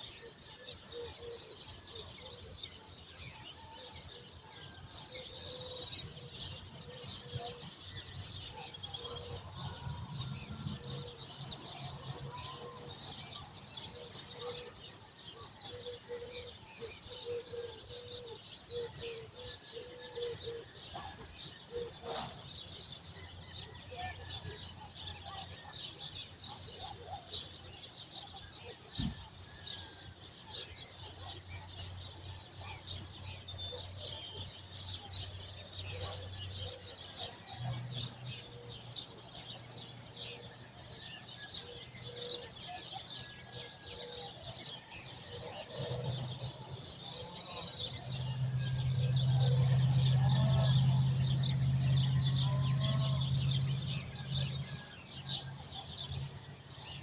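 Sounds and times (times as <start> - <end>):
small birds chirping: 0.0 - 57.0
low engine hum: 47.5 - 56.6.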